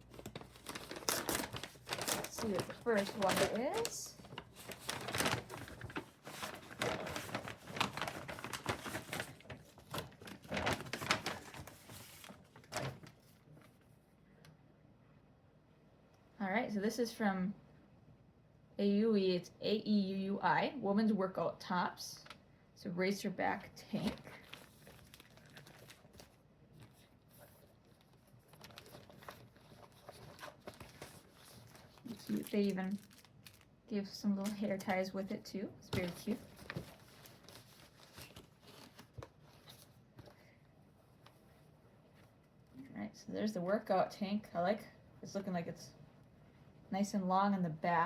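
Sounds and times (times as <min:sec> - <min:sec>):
package wrapping rustling: 0:00.0 - 0:13.8, 0:24.1 - 0:33.8, 0:35.9 - 0:40.4.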